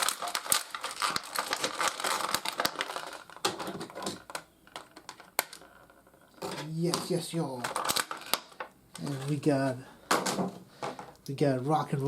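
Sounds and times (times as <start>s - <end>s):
plastic packaging crinkling: 0.0s - 9.5s.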